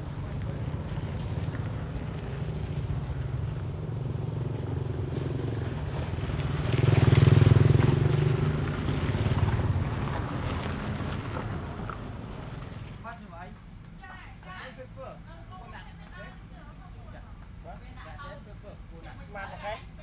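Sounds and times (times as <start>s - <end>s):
engines humming: 0.0s - 13.0s
vehicle passing close: 0.0s - 13.0s
tyres on gravel: 0.0s - 13.2s.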